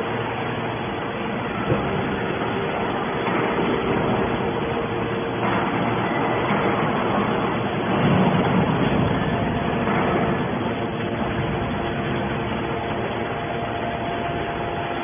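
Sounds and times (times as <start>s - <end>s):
baler machine drone: 0.0s - 15.0s.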